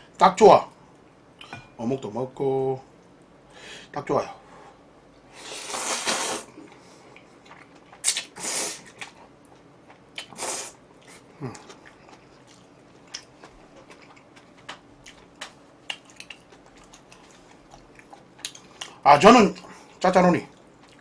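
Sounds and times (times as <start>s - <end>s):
noodles being slurped: 5.5s - 6.5s
quiet chewing: 6.5s - 10.4s, 11.0s - 21.0s.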